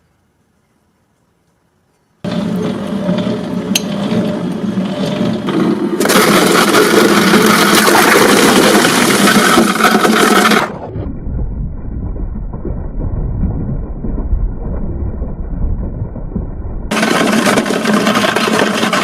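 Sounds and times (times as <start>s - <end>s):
machine grinding ice: 2.2s - 10.9s, 16.9s - 19.0s.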